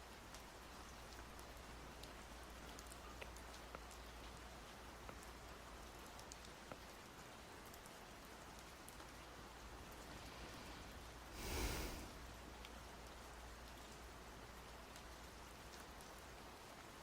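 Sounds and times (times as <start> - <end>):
rain drop ticks: 0.0 - 10.3, 12.1 - 17.0
faint steady rain: 0.0 - 17.0
brief rush of noise: 11.4 - 12.1.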